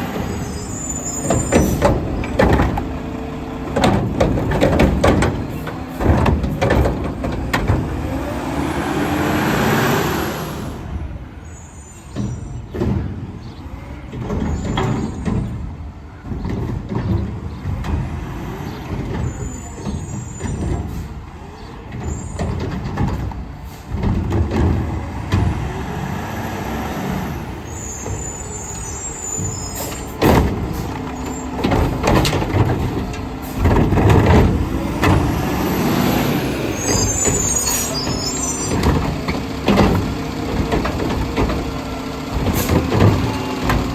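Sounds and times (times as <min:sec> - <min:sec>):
diesel engine running: 0:00.0 - 0:11.4, 0:17.5 - 0:43.9
air brakes hissing: 0:27.2 - 0:31.6, 0:35.6 - 0:40.4.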